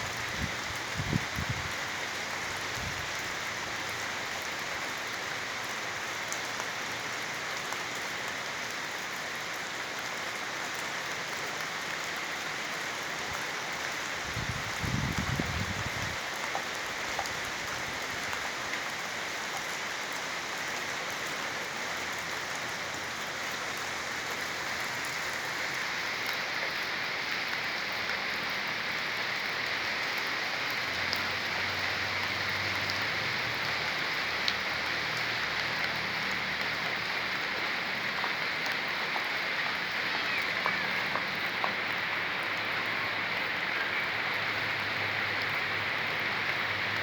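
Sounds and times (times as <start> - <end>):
rain pattering: 0.0 - 47.0.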